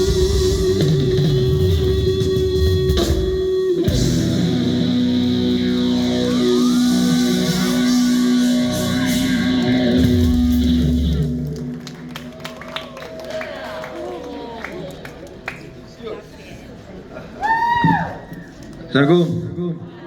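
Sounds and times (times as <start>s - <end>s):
electric guitar bent notes: 0.0s - 11.8s
live rock band playing: 0.0s - 12.4s.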